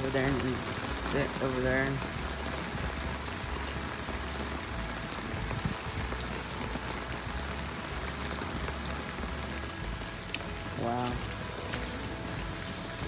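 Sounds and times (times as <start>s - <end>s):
heavy rain: 0.0s - 13.0s.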